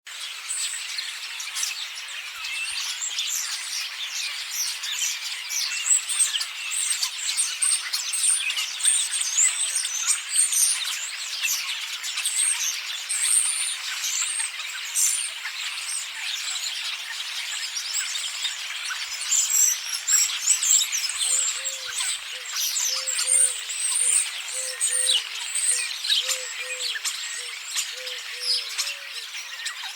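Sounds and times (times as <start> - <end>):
starlings chattering: 0.3 - 29.9
low bird call: 21.2 - 29.3.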